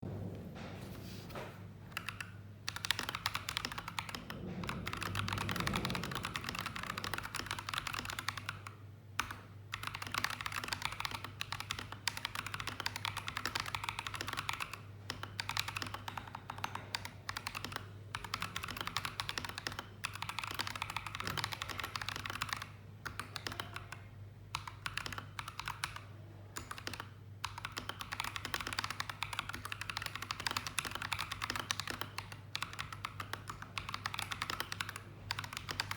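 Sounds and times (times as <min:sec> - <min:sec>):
mechanical keyboard typing: 0:01.9 - 0:35.9.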